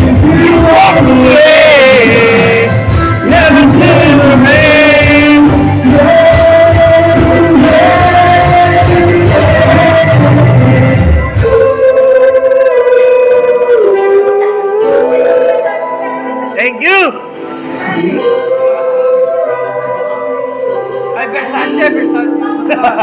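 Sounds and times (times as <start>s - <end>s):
pop ballad with band: 0.0s - 16.6s.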